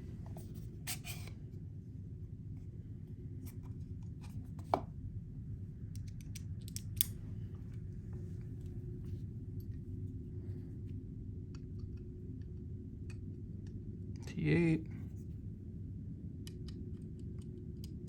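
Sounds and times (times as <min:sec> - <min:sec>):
steady low hum: 0:00.0 - 0:18.0
screwdriver bits clicking and tapping: 0:06.0 - 0:07.1.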